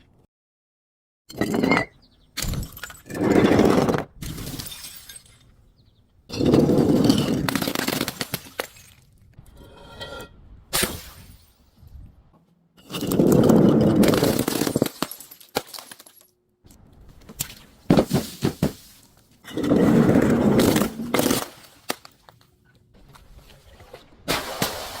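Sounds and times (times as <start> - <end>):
crunchy objects being crushed: 6.4 - 8.8.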